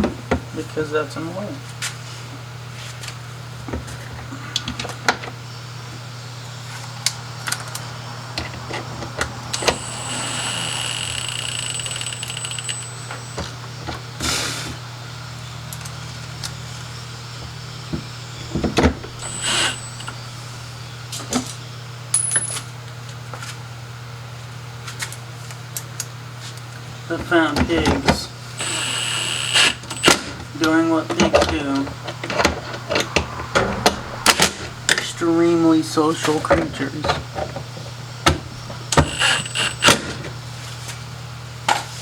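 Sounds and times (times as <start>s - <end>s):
steady low hum: 5.4s - 22.3s, 26.8s - 42.0s
thin high tone: 9.5s - 13.7s
hiss: 14.2s - 14.8s.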